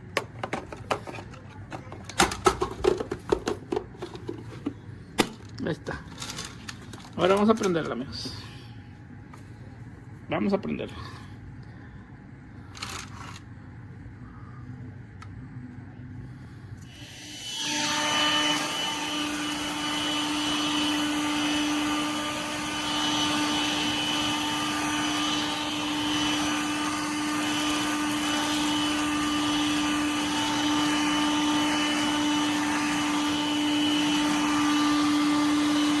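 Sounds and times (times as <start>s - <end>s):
stick vacuum running: 0.0s - 8.4s, 16.8s - 36.0s.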